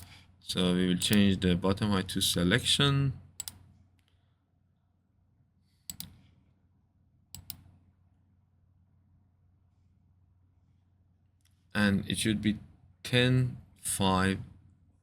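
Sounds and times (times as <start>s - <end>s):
computer mouse clicking: 3.4s - 4.1s, 5.9s - 6.3s, 7.3s - 7.8s.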